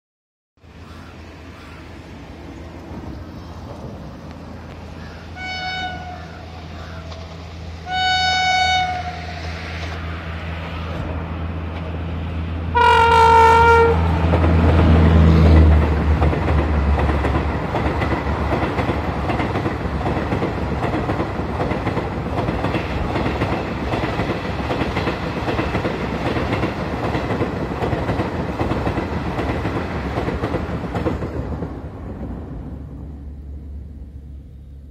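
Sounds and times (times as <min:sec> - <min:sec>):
locomotive engine hum: 0:00.6 - 0:34.9
locomotive two-tone horn: 0:05.3 - 0:06.4, 0:07.8 - 0:10.0, 0:12.7 - 0:14.2
train wheels clattering on rails: 0:14.2 - 0:33.1.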